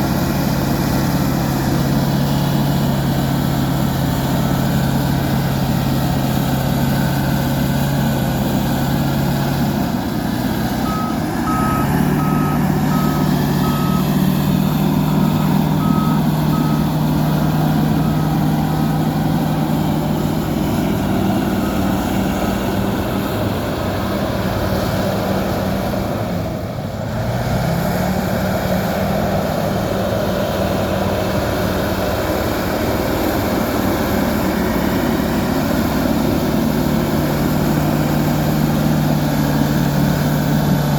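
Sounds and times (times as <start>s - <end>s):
bulldozer diesel engine: 0.0s - 40.9s
reversing alarm beeping: 10.8s - 22.8s.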